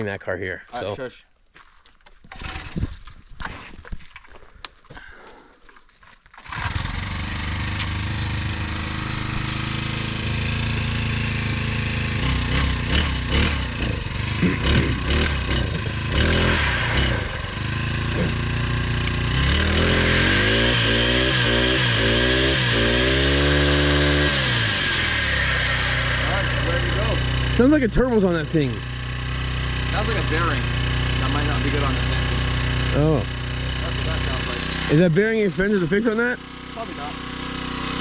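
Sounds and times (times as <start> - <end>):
brush cutter engine revving: 6.4 - 38.0
high whine: 13.5 - 29.1.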